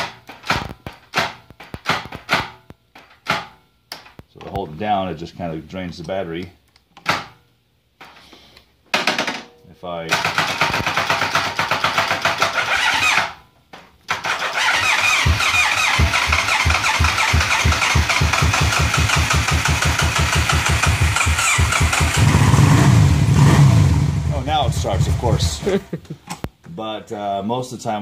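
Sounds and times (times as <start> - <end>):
motorcycle starter cranking: 10.1 - 13.4, 14.1 - 23.1
motorcycle engine running: 14.8 - 25.8.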